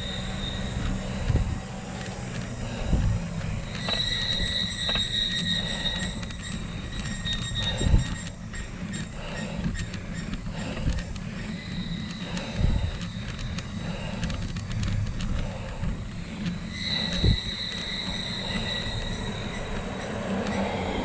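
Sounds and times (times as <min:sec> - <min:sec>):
high steady squeal: 0:00.0 - 0:21.0
wind buffeting microphone: 0:00.6 - 0:03.6.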